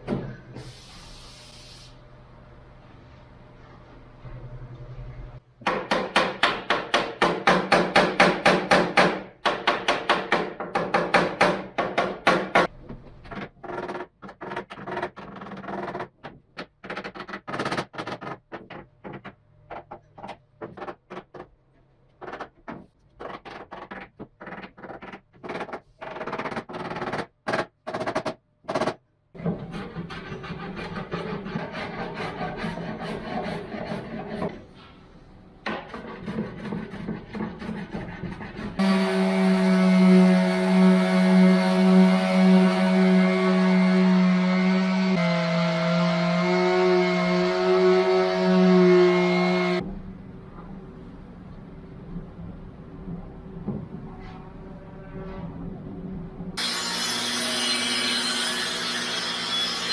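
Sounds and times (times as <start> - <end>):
hand tool working wood: 29.7 - 34.6.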